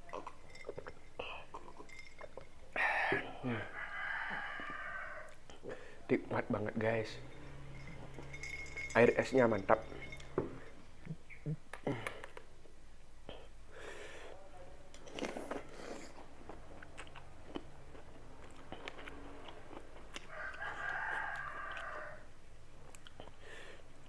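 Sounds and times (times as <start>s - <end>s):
rooster crowing: 3.4s - 5.4s, 6.8s - 10.8s, 17.3s - 22.4s
crunchy chewing: 14.9s - 24.0s.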